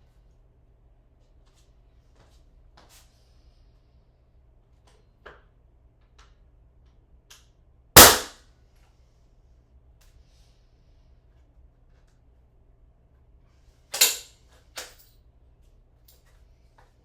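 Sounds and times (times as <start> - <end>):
nail gun firing bang: 8.0 - 8.3.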